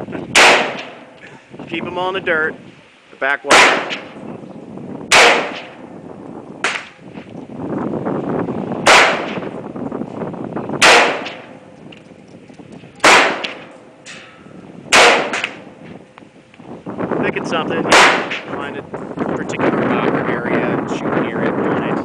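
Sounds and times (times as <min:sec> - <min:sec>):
rifle shots with echo: 0:00.4 - 0:01.1, 0:03.5 - 0:04.2, 0:05.1 - 0:05.8, 0:08.8 - 0:09.5, 0:10.8 - 0:11.6, 0:13.0 - 0:13.8, 0:14.9 - 0:15.7, 0:17.9 - 0:18.6.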